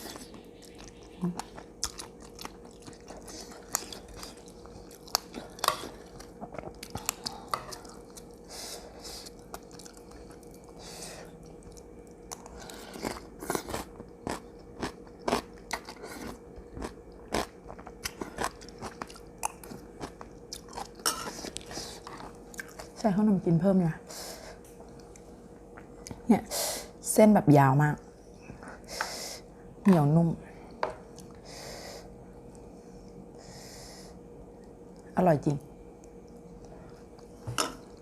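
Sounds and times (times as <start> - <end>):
person chewing and crunching food: 0.0 - 23.0, 30.7 - 31.5, 36.0 - 38.0.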